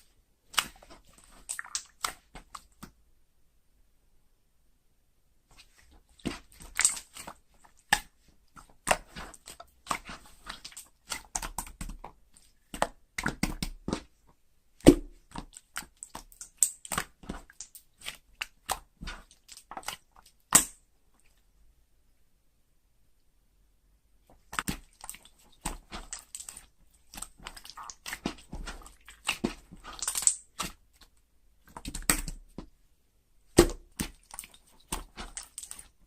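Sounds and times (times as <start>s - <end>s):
slime squishing with sticky pops: 0.5s - 2.9s, 5.6s - 14.2s, 14.8s - 20.8s, 24.3s - 32.8s, 33.5s - 36.0s.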